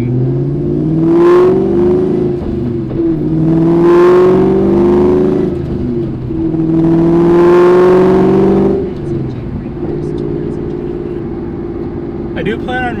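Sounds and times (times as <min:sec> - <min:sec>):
car engine accelerating: 0:00.0 - 0:13.0.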